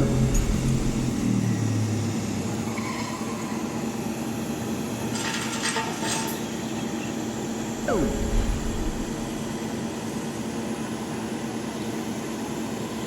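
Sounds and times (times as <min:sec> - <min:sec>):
heavy machinery running: 0:00.0 - 0:02.4.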